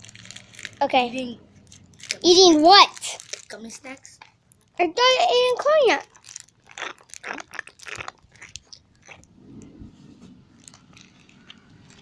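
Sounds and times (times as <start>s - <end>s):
person chewing crunchy snack: 0.0s - 0.8s, 1.6s - 2.3s, 2.9s - 4.8s, 6.0s - 9.3s, 10.4s - 12.0s.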